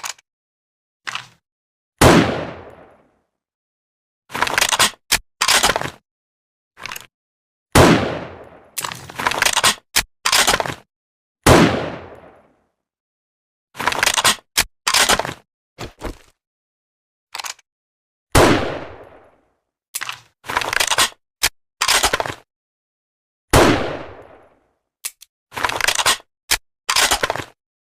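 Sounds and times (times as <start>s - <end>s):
rifle bolt clacking and sliding: 0.0s - 0.2s, 4.3s - 6.0s, 8.8s - 10.8s, 13.9s - 15.4s, 17.3s - 17.6s, 20.0s - 21.2s, 25.0s - 27.6s
rifle shots: 2.0s - 2.9s, 7.8s - 8.6s, 11.5s - 12.2s, 18.4s - 19.2s, 23.6s - 24.4s.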